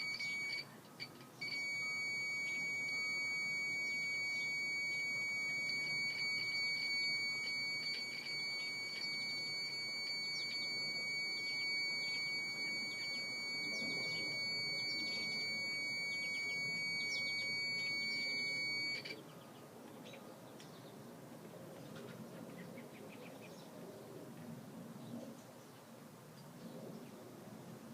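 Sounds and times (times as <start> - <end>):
sump pump alarm tone: 0.0 - 19.2
faint bird chirps: 0.0 - 21.0.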